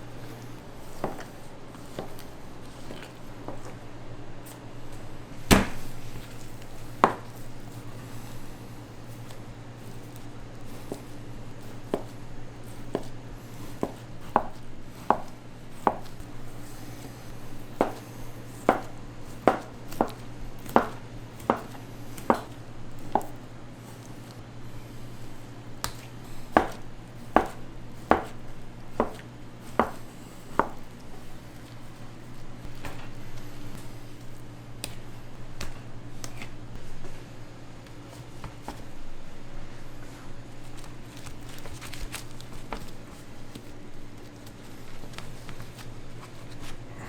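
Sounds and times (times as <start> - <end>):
knife chopping on cutting board: 5.4 - 6.0, 13.7 - 16.2, 17.7 - 18.0, 18.6 - 23.4, 25.8 - 31.4.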